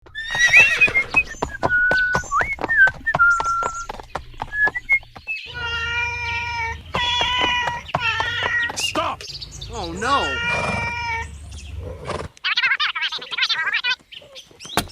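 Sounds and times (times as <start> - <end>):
kittens mewing: 5.5 - 11.4, 12.4 - 14.4.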